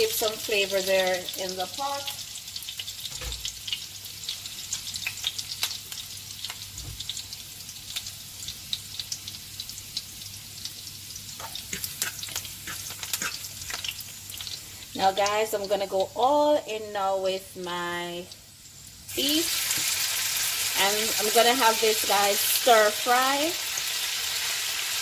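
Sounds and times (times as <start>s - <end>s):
food sizzling in hot oil: 0.0s - 25.0s.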